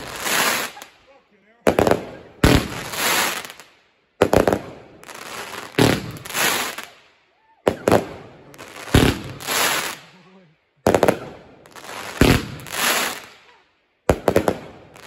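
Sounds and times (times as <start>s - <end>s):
fireworks hissing burst: 0.0s - 0.9s, 1.9s - 3.6s, 5.1s - 6.9s, 7.9s - 10.1s, 11.0s - 13.3s
fireworks bangs: 0.0s - 10.2s, 10.8s - 15.0s.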